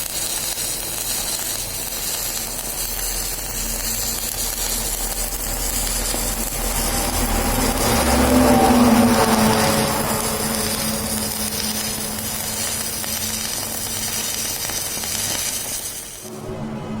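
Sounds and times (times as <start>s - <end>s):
welding arc crackling sizzle: 0.0s - 16.4s
low machine hum: 16.2s - 17.0s.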